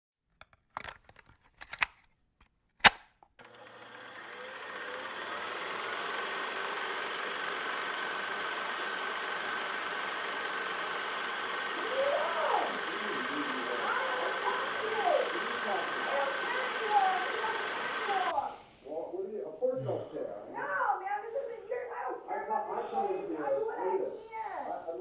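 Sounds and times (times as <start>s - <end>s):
machine whirring: 3.4s - 18.4s.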